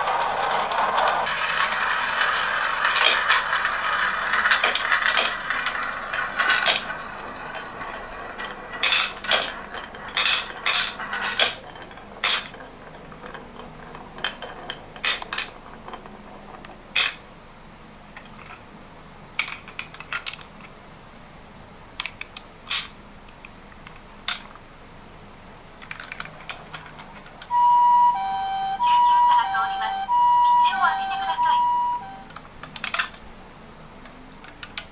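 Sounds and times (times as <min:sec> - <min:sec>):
marbles rolling down wooden run: 0:00.0 - 0:17.2.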